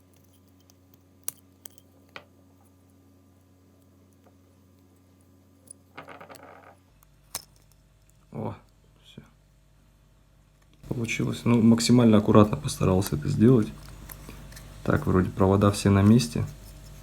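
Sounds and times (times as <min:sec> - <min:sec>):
scraping rustle: 0:12.4 - 0:17.0.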